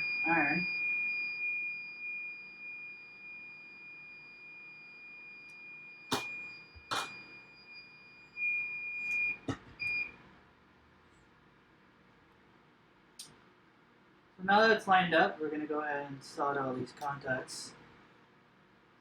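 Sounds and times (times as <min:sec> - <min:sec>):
high-pitched electronic buzzer tone: 0:00.0 - 0:10.0.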